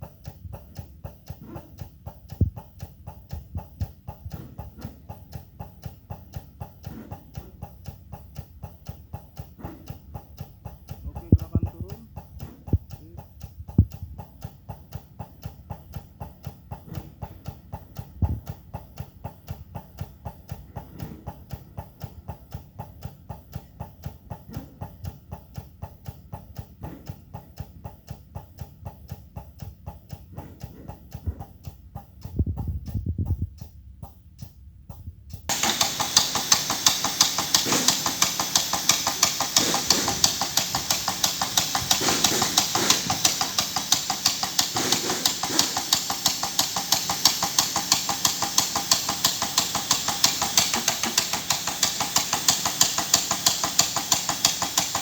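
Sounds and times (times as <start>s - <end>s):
small machine ticking: 0.0s - 55.0s
machine knocks: 35.5s - 55.0s.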